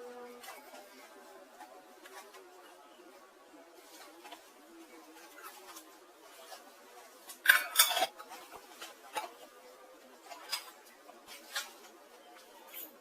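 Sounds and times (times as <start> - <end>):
cookware knocking and clinking: 7.4 - 8.2.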